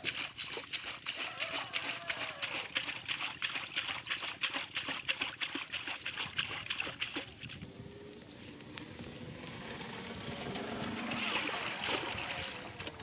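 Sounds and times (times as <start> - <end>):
water splashing and trickling: 0.0 - 7.7, 10.4 - 13.0.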